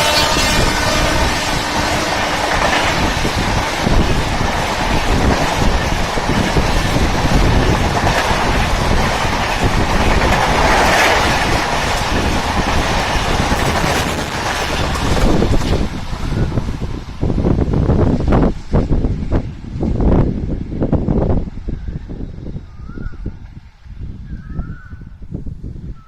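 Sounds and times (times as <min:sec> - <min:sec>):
train passing at speed: 0:00.0 - 0:26.0
wheels clattering on rails: 0:01.4 - 0:21.4.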